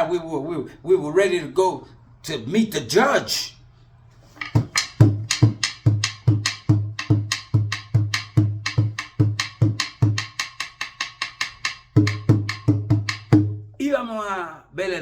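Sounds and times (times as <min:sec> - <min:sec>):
hand drum light slaps: 0:04.4 - 0:13.6.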